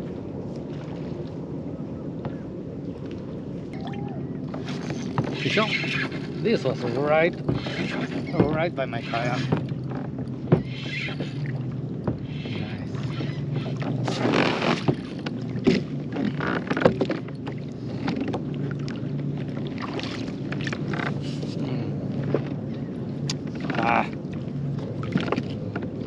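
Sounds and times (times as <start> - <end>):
steady low hum: 0.0 - 26.0
water splashing: 3.1 - 22.4, 23.1 - 26.0
kayak handling clunks: 4.5 - 18.5
sharp knocks: 7.4 - 8.7.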